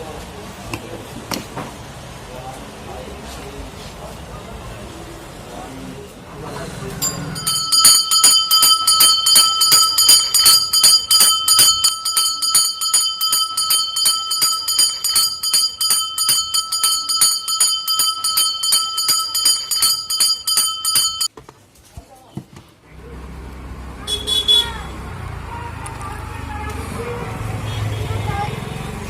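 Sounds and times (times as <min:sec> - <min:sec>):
small handbell ringing rapidly: 0:07.0 - 0:21.3.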